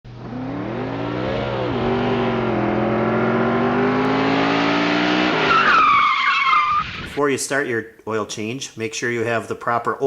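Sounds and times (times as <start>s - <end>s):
car engine revving: 0.1s - 7.2s.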